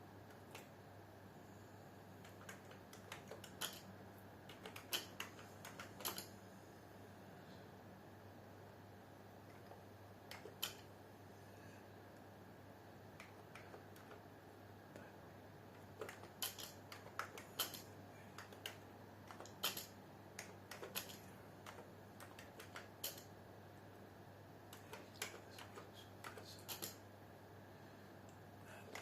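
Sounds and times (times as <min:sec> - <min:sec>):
faint steady hum: 0:00.0 - 0:29.0
keyboard typing: 0:00.3 - 0:00.7, 0:02.2 - 0:06.3, 0:09.5 - 0:10.9, 0:13.1 - 0:14.3, 0:15.7 - 0:23.3, 0:24.7 - 0:27.0, 0:28.8 - 0:29.0.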